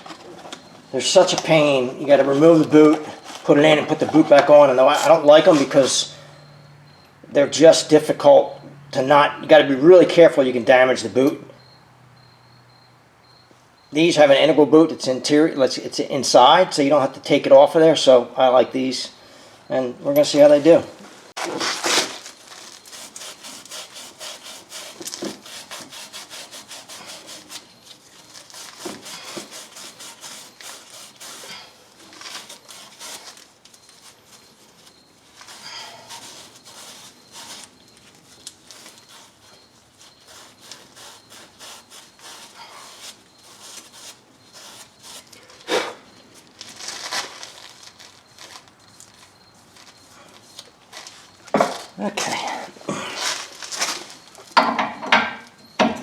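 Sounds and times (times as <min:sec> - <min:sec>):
hand scraping strokes: 0:00.0 - 0:06.1, 0:21.4 - 0:54.4.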